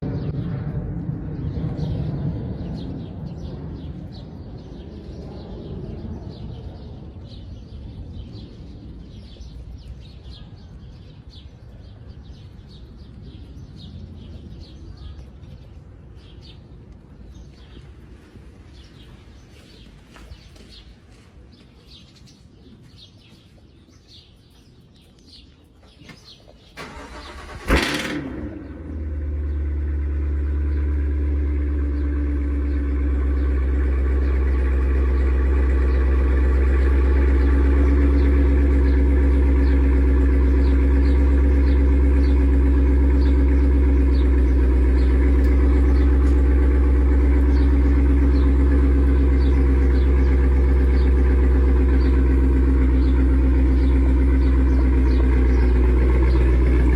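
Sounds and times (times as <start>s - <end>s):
car engine starting and idling: 26.6s - 56.9s.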